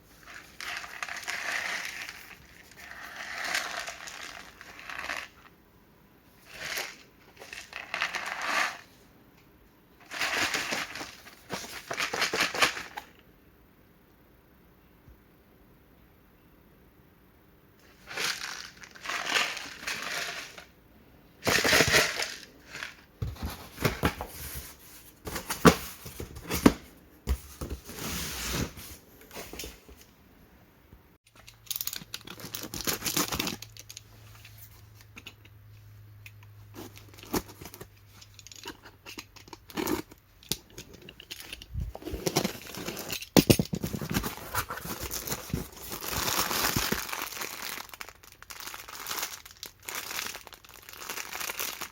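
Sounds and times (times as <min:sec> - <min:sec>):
faint low hum: 0:00.0 - 0:46.0
plastic packaging crinkling and tearing: 0:18.0 - 0:20.6, 0:31.4 - 0:34.0, 0:43.8 - 0:51.9.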